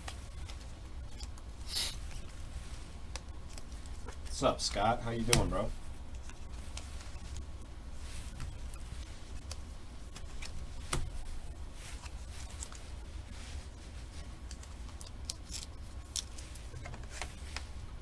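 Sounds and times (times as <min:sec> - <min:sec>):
low steady hum: 0:00.0 - 0:18.0
cards clicking and rustling: 0:03.0 - 0:13.0, 0:14.0 - 0:17.8.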